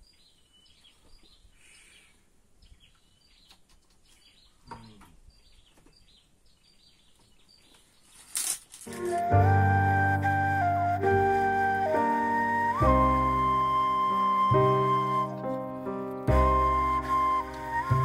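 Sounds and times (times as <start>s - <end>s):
bird chirping: 0.0s - 9.4s.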